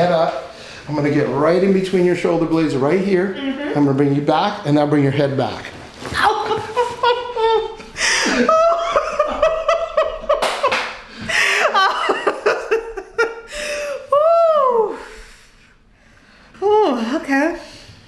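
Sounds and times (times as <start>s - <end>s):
woman laughing: 6.2s - 10.4s, 11.4s - 14.9s.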